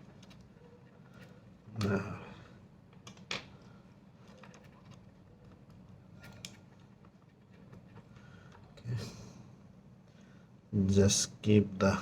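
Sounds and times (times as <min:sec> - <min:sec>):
faint clicks of small parts: 0:00.0 - 0:09.0.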